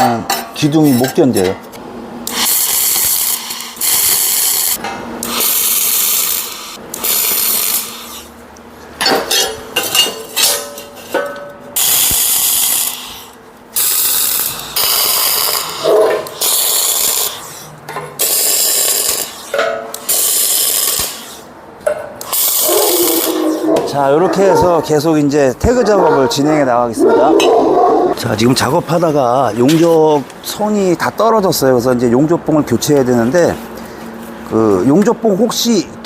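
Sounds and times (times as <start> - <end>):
welder arc crackling: 2.2 - 8.6, 11.8 - 21.5, 22.2 - 23.6.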